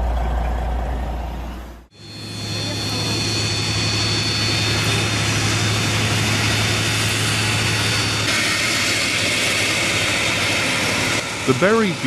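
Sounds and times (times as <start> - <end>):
loud engine noise: 0.0 - 12.0.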